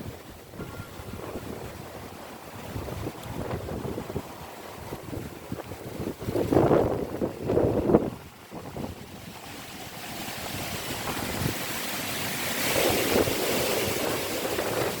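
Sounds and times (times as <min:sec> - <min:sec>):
strong wind gusting: 0:00.0 - 0:15.0
wind buffeting microphone: 0:00.0 - 0:15.0.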